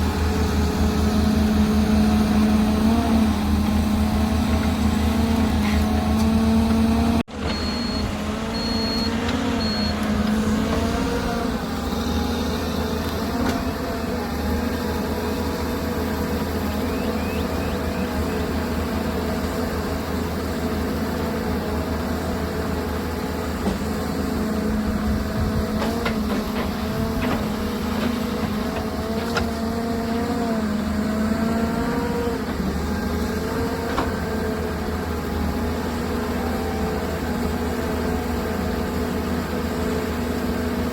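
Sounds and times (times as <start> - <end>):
excavator diesel engine running: 0.0 - 40.9
short high beeps: 7.4 - 10.0.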